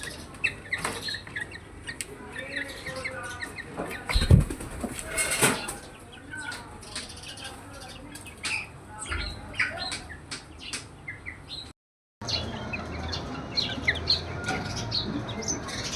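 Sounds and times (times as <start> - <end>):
birds chirping and squawking: 0.0 - 15.9.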